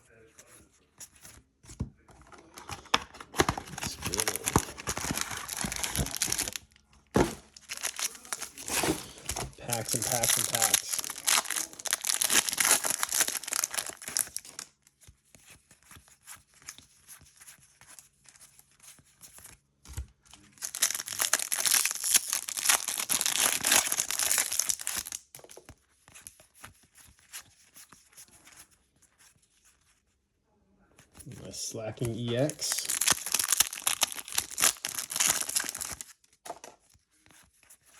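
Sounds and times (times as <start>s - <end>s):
foil wrappers tearing and crinkling: 3.3s - 6.6s, 7.2s - 14.6s, 20.4s - 25.2s, 32.4s - 36.1s.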